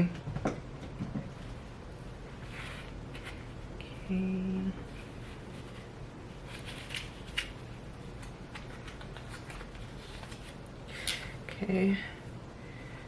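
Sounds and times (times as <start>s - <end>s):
low room hiss: 0.0s - 13.0s.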